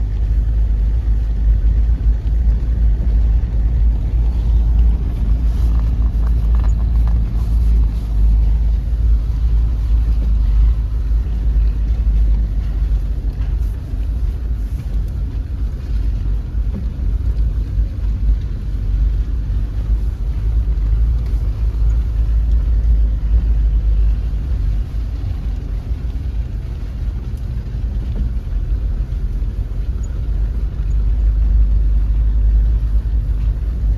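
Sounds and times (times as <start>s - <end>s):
light rattling: 0.0s - 18.9s
vehicle rumble: 0.0s - 33.9s.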